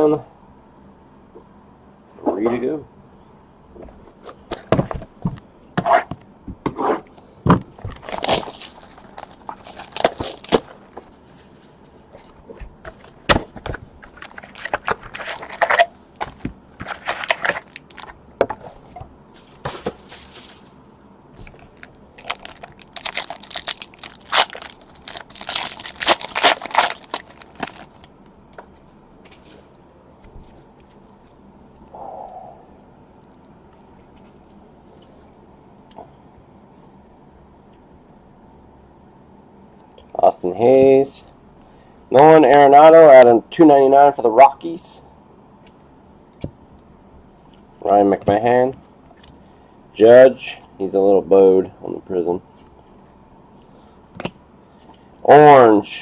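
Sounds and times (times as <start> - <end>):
wrappers crinkling and tearing: 7.8 - 11.0, 14.1 - 15.9, 16.8 - 18.1, 21.4 - 28.1.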